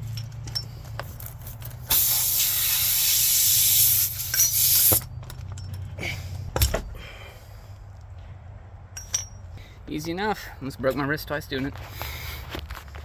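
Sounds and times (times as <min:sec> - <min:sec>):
air hissing out of tyre: 0:01.9 - 0:05.0.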